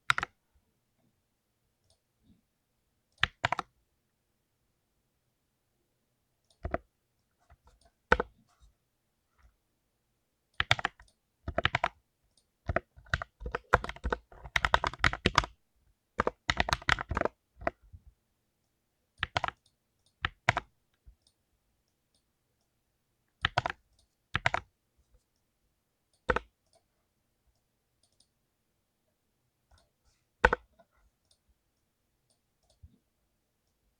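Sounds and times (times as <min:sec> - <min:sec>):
clicky mechanical keyboard typing: 0:00.1 - 0:00.3, 0:03.2 - 0:03.7, 0:07.6 - 0:08.3, 0:10.6 - 0:12.0, 0:12.7 - 0:15.6, 0:16.2 - 0:17.8, 0:19.2 - 0:21.4, 0:23.4 - 0:24.7, 0:29.8 - 0:30.7.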